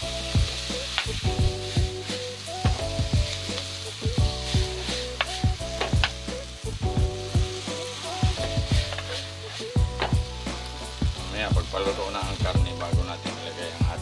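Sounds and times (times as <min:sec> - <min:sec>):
background music with beat: 0:00.0 - 0:14.0
food sizzling in a hot pan: 0:00.0 - 0:14.0.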